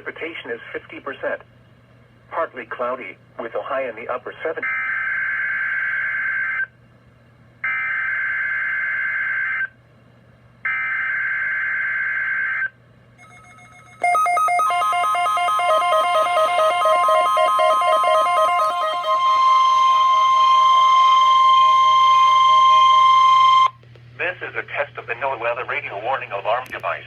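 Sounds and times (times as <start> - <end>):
rapid stepping beeping tones: 13.2 - 22.2
harsh buzzing data tone: 13.2 - 23.8
steady high alarm tone: 13.2 - 23.8.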